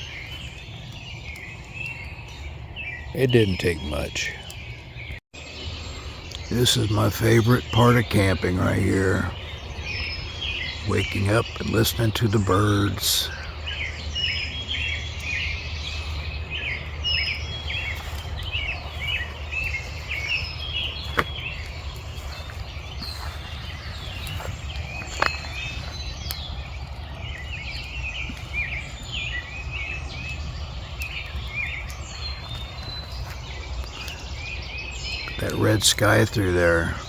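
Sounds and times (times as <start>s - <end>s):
birds chirping and singing: 0.0s - 37.0s
steady low rumble: 13.2s - 37.0s.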